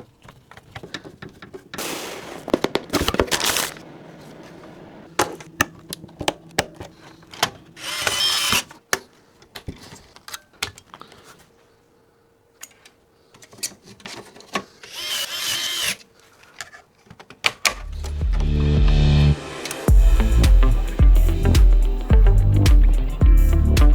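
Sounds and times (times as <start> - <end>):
cordless power driver whirring: 7.4 - 8.7, 14.8 - 16.0
music: 17.8 - 23.9.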